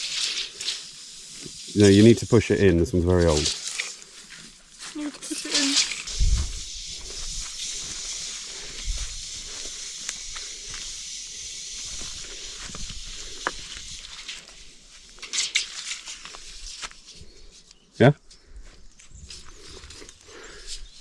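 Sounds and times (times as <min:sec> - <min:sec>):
steady high hiss: 0:00.0 - 0:17.2.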